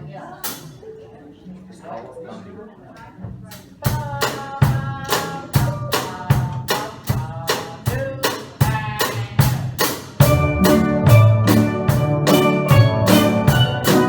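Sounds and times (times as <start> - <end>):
steel band playing: 10.1 - 14.0.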